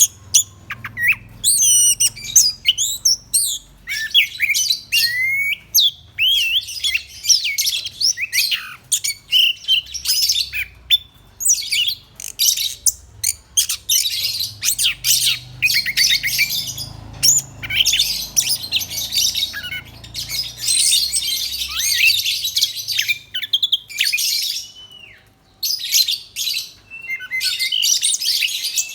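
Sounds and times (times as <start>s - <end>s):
thrush singing: 11.4s - 24.3s.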